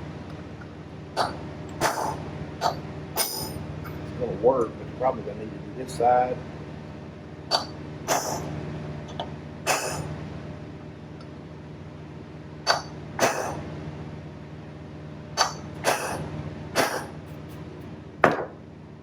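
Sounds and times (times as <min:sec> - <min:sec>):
steady low hum: 0:00.0 - 0:19.0
hammer striking metal punch: 0:01.2 - 0:03.6.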